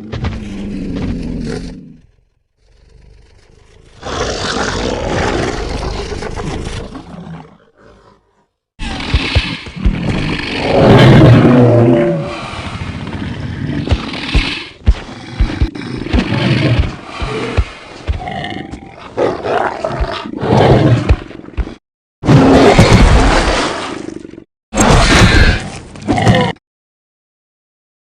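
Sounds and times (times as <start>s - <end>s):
rough monster growls: 0.0s - 23.4s
monster roar: 2.8s - 8.2s, 8.8s - 12.7s.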